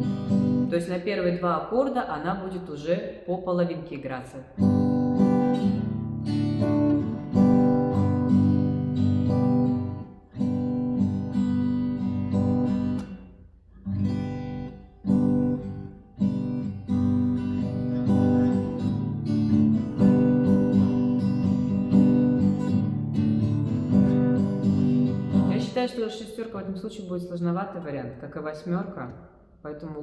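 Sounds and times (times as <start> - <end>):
acoustic guitar strumming: 0.0 - 0.7, 4.6 - 26.0.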